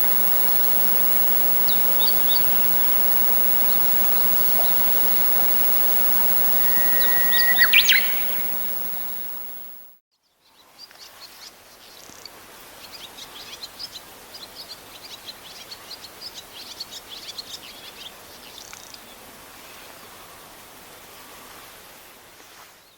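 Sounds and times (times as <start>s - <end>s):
swallow twittering: 0.0s - 9.9s
background hiss: 0.0s - 10.0s.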